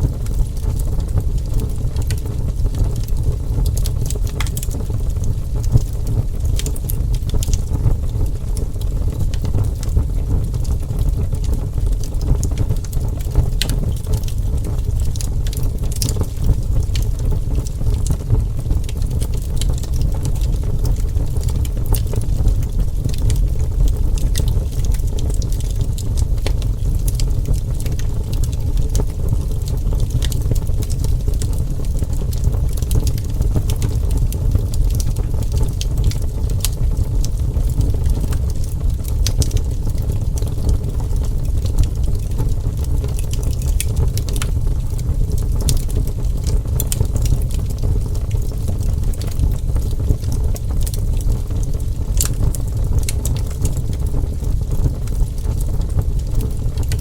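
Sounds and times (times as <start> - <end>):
low rumble of flames: 0.0 - 57.0
wood crackling and popping: 0.0 - 57.0.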